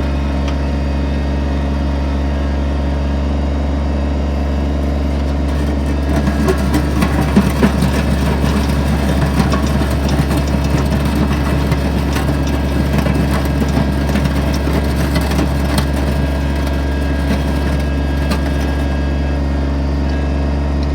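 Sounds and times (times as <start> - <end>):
diesel engine running: 0.0 - 20.9
blade scraping road surface: 4.3 - 20.0.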